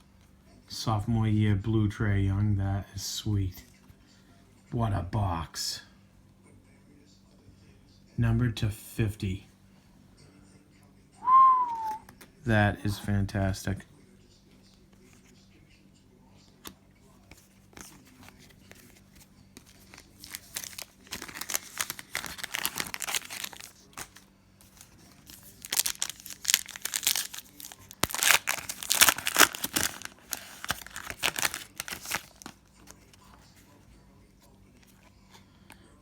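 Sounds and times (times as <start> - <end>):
foil wrapper tearing and crinkling: 19.6 - 32.9.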